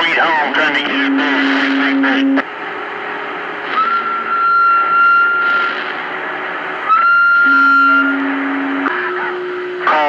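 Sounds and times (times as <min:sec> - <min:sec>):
radio hiss and static: 0:00.0 - 0:10.0
high radio whistle: 0:00.9 - 0:02.4, 0:03.6 - 0:06.0, 0:06.8 - 0:10.0.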